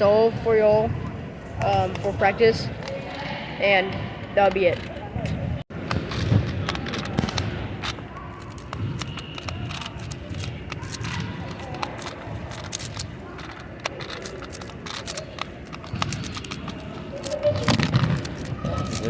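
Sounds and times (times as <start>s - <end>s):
puzzle cube clicking: 5.8s - 19.0s.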